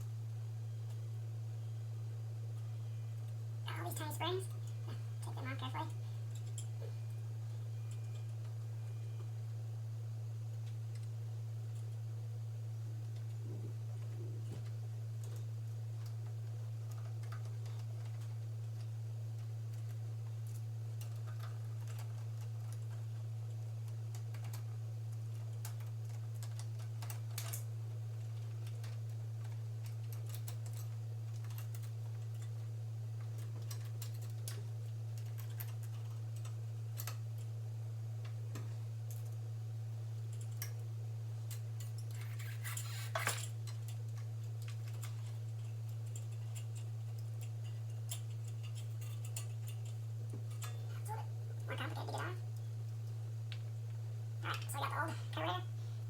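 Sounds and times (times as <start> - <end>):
steady low hum: 0.0 - 56.0
clatter of parts: 41.5 - 50.8
metal parts and tools clicking: 41.5 - 50.9.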